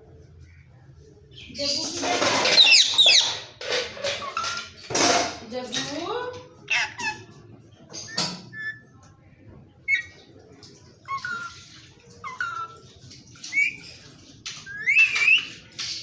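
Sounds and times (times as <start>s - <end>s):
parrot calling: 2.4s - 4.8s, 6.6s - 9.0s, 9.8s - 10.3s, 11.0s - 15.9s.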